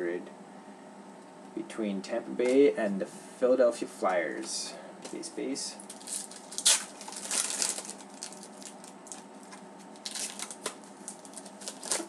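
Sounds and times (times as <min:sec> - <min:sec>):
trading cards rustling: 0:05.8 - 0:12.0.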